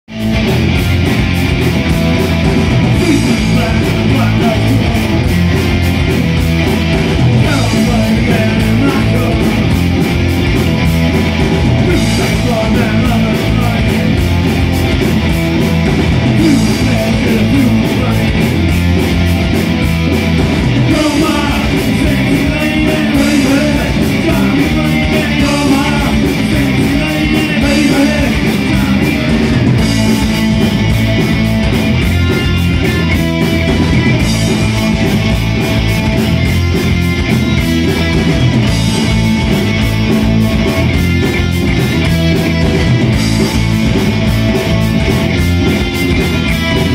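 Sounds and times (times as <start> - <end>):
electric guitar: 0.0 - 46.9
steady drum beat: 0.1 - 46.9
person singing: 3.0 - 5.3, 7.4 - 9.8, 11.8 - 14.6, 16.4 - 18.6, 20.8 - 29.6.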